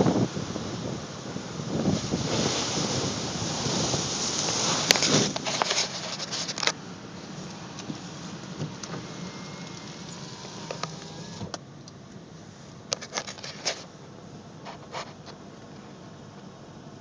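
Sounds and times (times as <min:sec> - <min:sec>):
wind rushing: 0:00.0 - 0:05.6
surf: 0:00.0 - 0:11.4.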